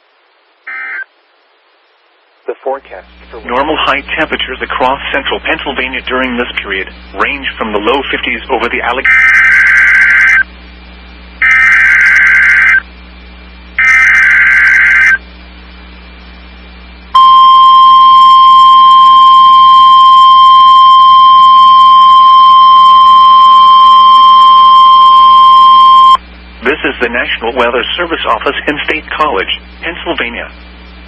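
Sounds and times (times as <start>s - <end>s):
digital header data bursts: 8.6s - 10.5s, 11.4s - 12.8s, 13.8s - 15.2s
steady warning alarm tone: 8.8s - 10.5s, 11.4s - 12.8s, 13.8s - 15.2s, 17.2s - 26.2s.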